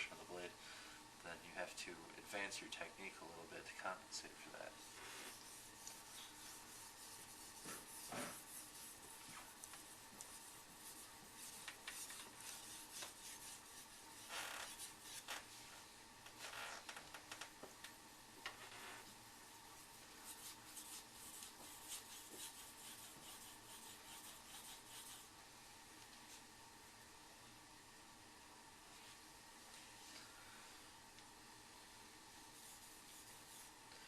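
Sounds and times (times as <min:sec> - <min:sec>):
knife scraping on whetstone: 0:05.0 - 0:09.0.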